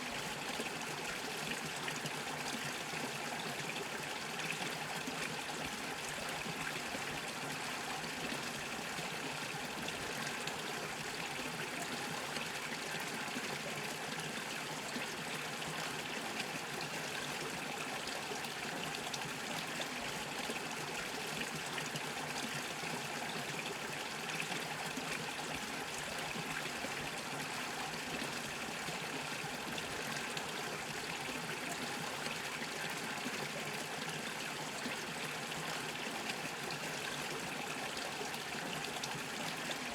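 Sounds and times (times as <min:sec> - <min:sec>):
brook trickling over stones: 0:00.0 - 0:39.9.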